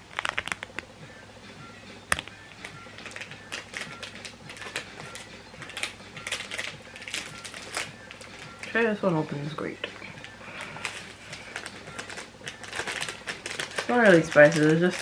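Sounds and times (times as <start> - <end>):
plastic packet crinkling: 0.0 - 0.8, 2.6 - 8.8, 9.9 - 15.0.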